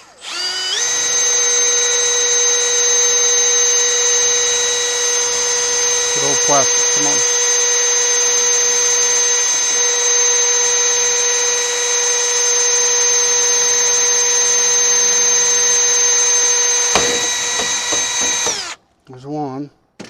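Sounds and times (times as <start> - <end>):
power drill boring through plastic: 0.0 - 18.8
drill motor spinning down: 0.2 - 18.8
sharp knock: 16.9 - 18.7.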